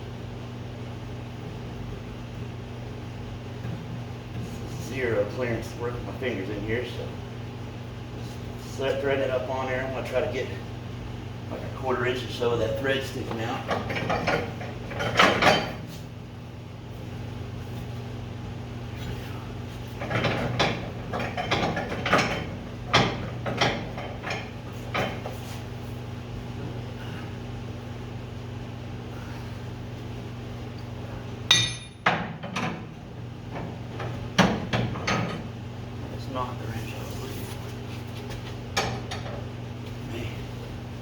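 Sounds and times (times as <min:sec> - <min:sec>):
steady low hum: 0:00.0 - 0:41.0
ringing metal clink: 0:31.5 - 0:32.0.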